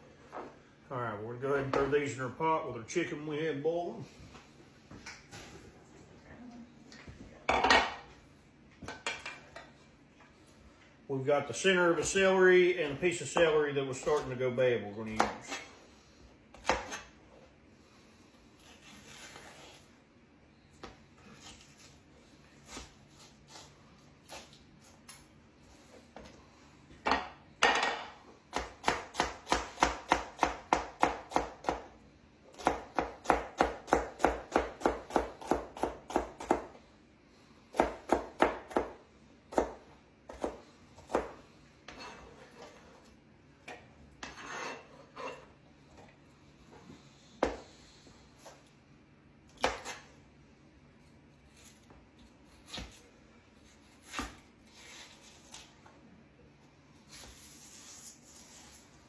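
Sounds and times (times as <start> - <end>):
knife chopping on cutting board: 32.6 - 36.7, 37.7 - 42.7.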